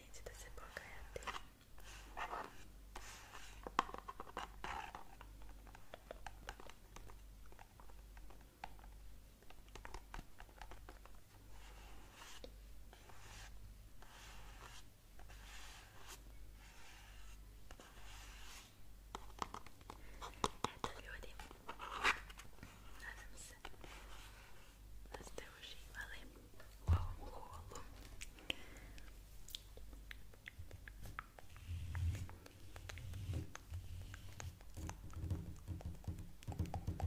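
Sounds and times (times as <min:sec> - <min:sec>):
soft hissing scratching: 0:00.1 - 0:05.8, 0:11.4 - 0:18.8, 0:31.0 - 0:34.8.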